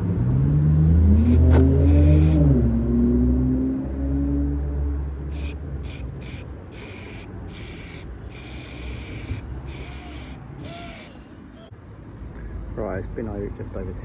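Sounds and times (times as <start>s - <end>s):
aerosol spray can hissing: 1.2s - 2.4s, 5.3s - 11.2s.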